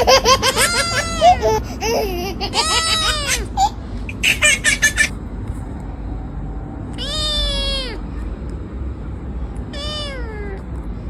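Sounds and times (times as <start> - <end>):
cat meowing: 6.9 - 8.0, 9.7 - 10.7.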